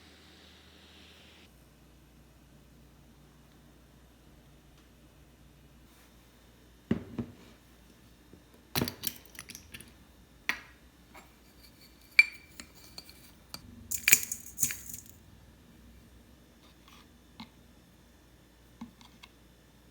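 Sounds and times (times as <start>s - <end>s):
scraping and clattering: 11.2s - 15.2s.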